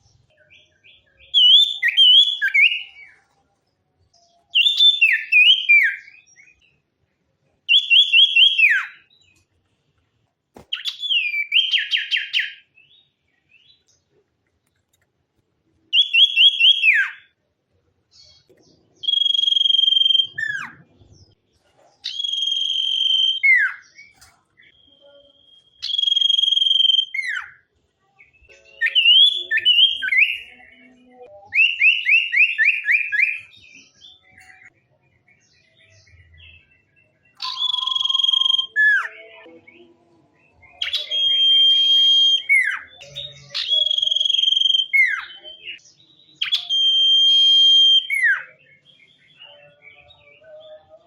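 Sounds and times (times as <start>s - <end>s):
songbird whistling and trilling: 0.4s - 3.2s, 4.2s - 6.7s, 7.7s - 9.4s, 10.6s - 13.0s, 15.9s - 17.3s, 19.0s - 20.9s, 22.0s - 27.6s, 28.4s - 30.6s, 31.3s - 34.7s, 35.7s - 39.5s, 40.5s - 51.0s.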